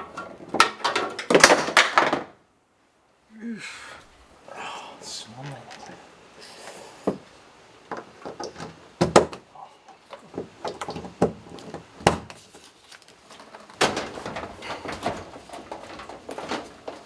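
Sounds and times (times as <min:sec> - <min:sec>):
door knocking and clattering: 0:13.8 - 0:17.0.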